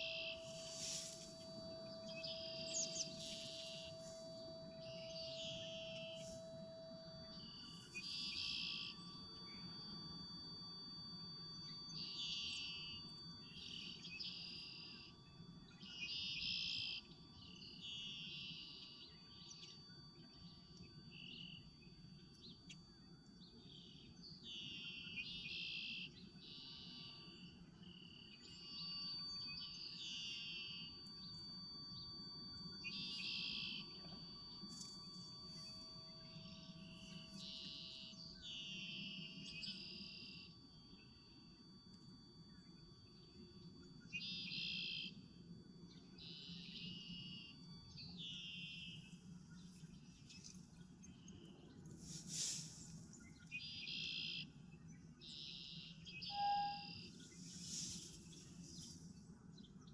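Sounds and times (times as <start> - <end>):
high electronic drone tones: 0.0 - 15.0
trilled electronic chirps: 0.0 - 21.8, 23.6 - 59.4.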